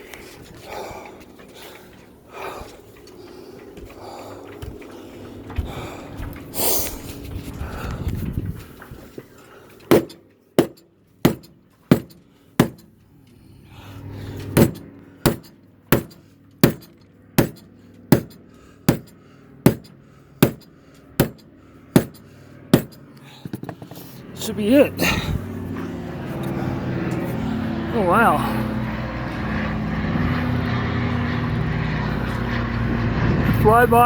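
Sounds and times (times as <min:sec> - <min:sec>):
mallet striking wooden plug: 0:09.9 - 0:12.8, 0:14.6 - 0:19.1, 0:19.7 - 0:21.4, 0:22.0 - 0:22.2, 0:22.8 - 0:23.0.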